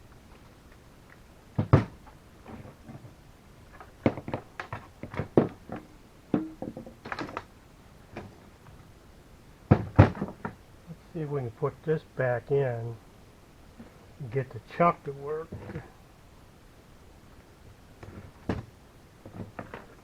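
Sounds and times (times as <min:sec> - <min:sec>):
tools knocking and clattering: 0:04.1 - 0:07.4.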